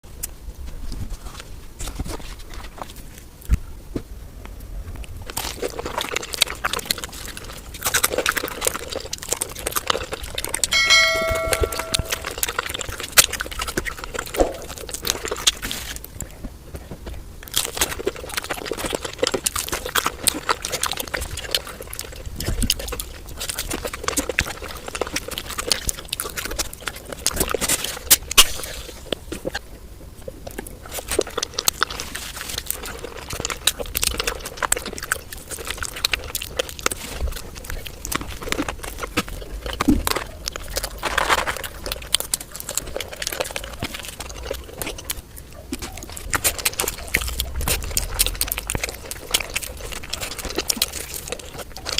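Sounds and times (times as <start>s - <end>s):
chewing and mouth clicks: 0.2s - 51.9s
brief ringing ding: 10.7s - 12.4s.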